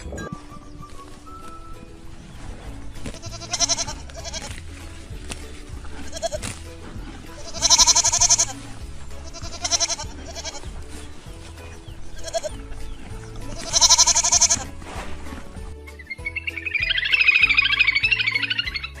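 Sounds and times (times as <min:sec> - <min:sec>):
background music: 0:00.0 - 0:19.0
goat bleating: 0:02.8 - 0:14.8.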